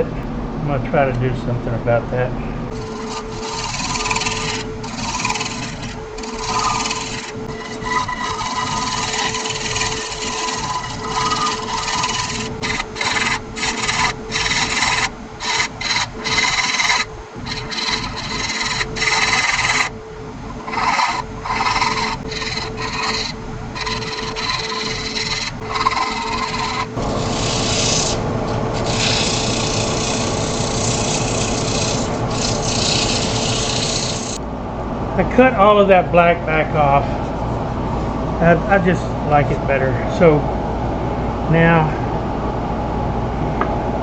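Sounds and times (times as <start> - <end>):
wood lathe motor hum: 2.6 - 34.4
turning tool scraping wood: 2.7 - 34.4.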